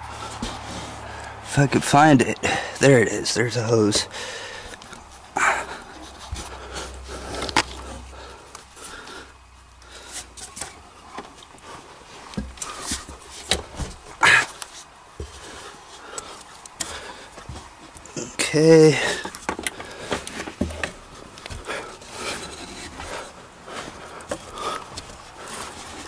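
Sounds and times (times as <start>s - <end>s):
man breathing hard: 0.0s - 1.5s, 2.4s - 2.8s, 4.0s - 10.4s, 15.2s - 17.6s, 18.8s - 20.5s, 21.1s - 26.0s.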